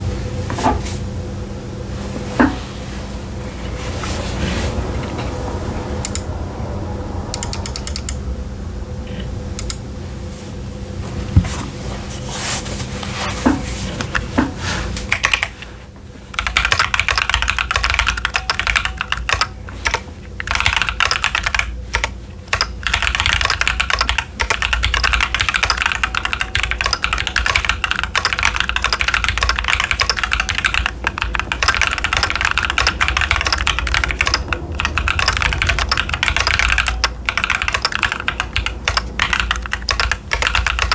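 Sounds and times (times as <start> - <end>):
typing on mechanical keyboard: 6.0 - 6.3, 7.3 - 8.2, 15.1 - 15.6, 16.4 - 40.9.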